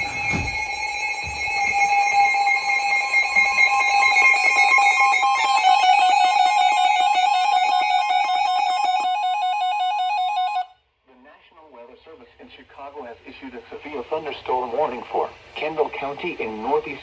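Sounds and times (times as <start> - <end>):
electronic alert tone: 0.0 - 10.7.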